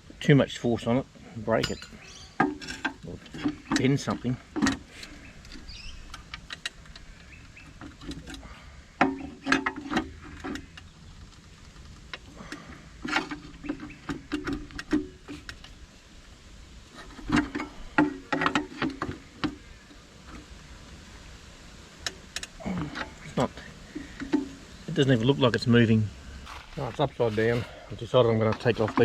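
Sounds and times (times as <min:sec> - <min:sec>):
hand tools scraping metal: 0:01.6 - 0:05.8, 0:26.4 - 0:29.0.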